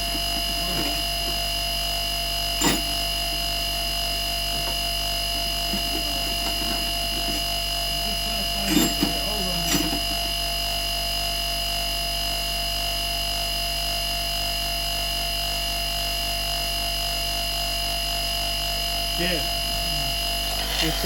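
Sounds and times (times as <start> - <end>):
motor-driven wire brush whining: 2.5 - 3.4, 19.9 - 21.0.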